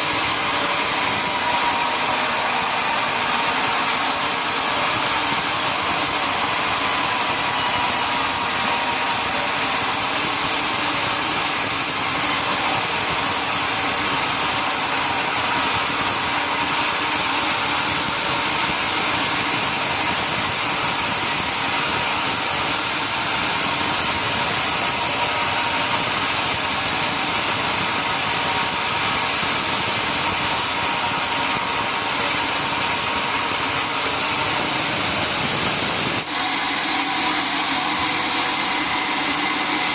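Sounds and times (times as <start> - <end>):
sawmill machinery with high whine: 0.0 - 39.9.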